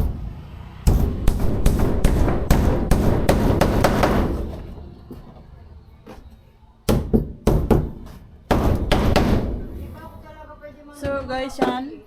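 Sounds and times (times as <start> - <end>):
hammer striking a nail: 0.9 - 4.5, 6.9 - 9.6.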